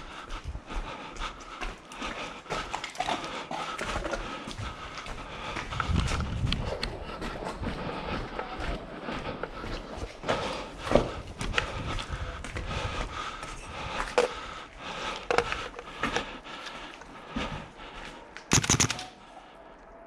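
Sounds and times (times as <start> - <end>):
crackling footsteps: 0.0 - 19.3
airsoft rifle rapid fire: 18.5 - 19.1.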